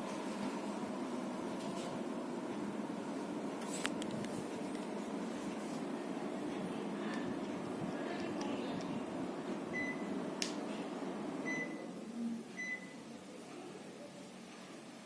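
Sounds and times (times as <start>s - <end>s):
air conditioner airflow rushing: 0.0s - 15.0s
air conditioner short high beeps: 9.7s - 10.2s, 11.4s - 12.0s, 12.6s - 13.1s.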